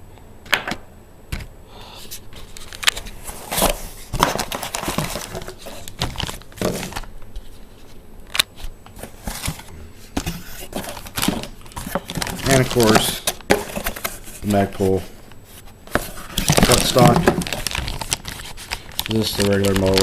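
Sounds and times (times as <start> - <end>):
packaging crinkling: 2.4 - 20.0.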